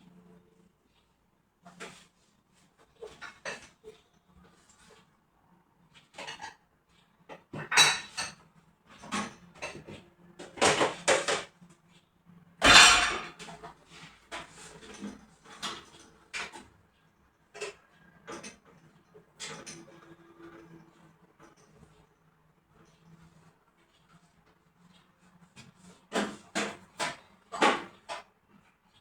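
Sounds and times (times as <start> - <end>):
household items clattering: 12.6 - 13.6.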